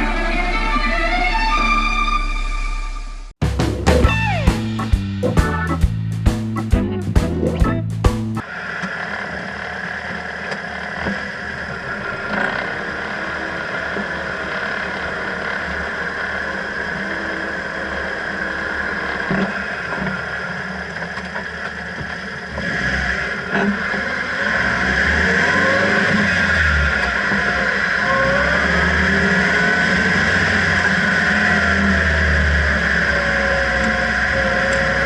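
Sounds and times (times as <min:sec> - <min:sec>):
small truck engine running: 0:03.4 - 0:35.0
steady whining hum: 0:08.4 - 0:24.7, 0:25.5 - 0:35.0.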